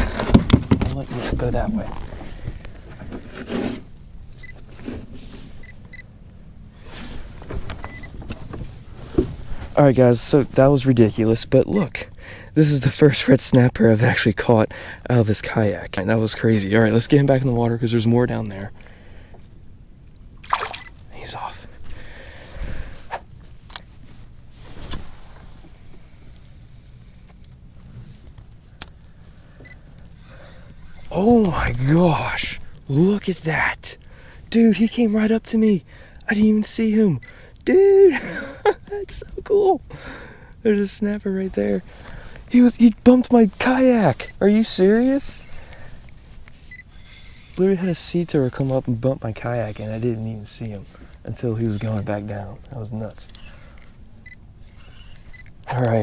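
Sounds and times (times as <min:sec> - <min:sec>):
knocks and scrapes on plastic kayak: 0:00.0 - 0:03.9
high hiss: 0:24.7 - 0:27.4.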